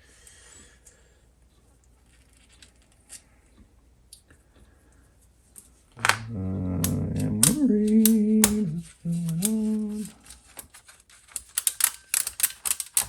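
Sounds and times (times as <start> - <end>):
low steady background: 0.0 - 13.0
small metal parts clicking: 6.8 - 13.0.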